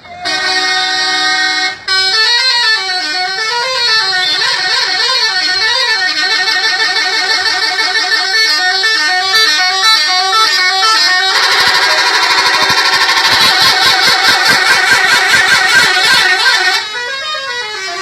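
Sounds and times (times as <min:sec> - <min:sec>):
musical bus air horn: 0:00.0 - 0:18.0.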